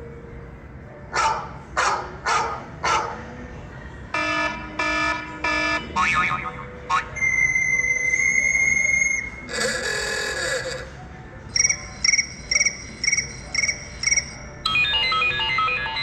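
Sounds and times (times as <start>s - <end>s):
melodic ringtone: 4.2s - 10.9s, 11.5s - 16.0s
cricket-chirp ringtone: 4.8s - 16.0s.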